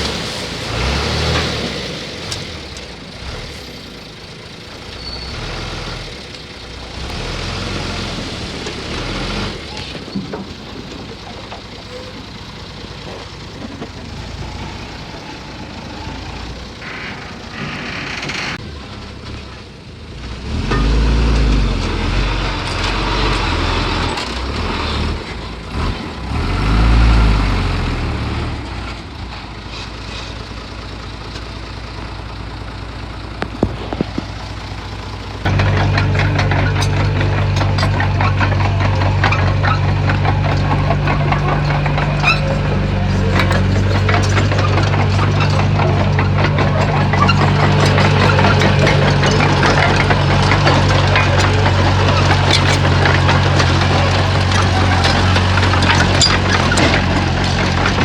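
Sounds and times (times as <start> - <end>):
heavy machinery diesel engine: 0.0 - 58.0
light metal clanks: 35.4 - 58.0.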